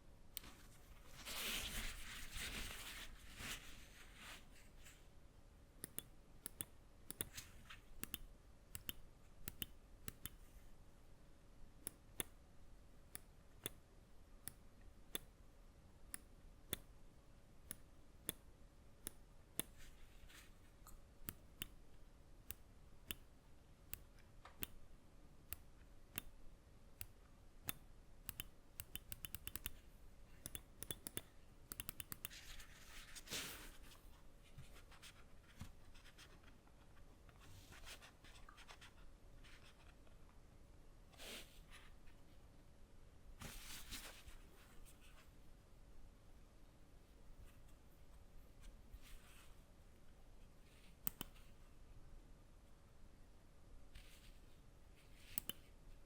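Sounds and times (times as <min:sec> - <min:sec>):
mouse buttons clicking: 0:05.8 - 0:07.4, 0:08.0 - 0:10.4, 0:27.0 - 0:29.8, 0:30.4 - 0:32.4, 0:51.0 - 0:51.4, 0:55.3 - 0:55.7.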